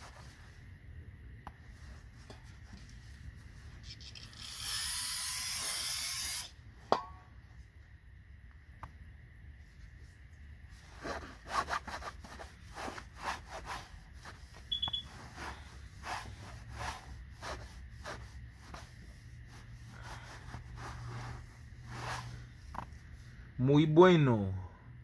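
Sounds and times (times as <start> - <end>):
short high double beep: 14.7 - 15.1.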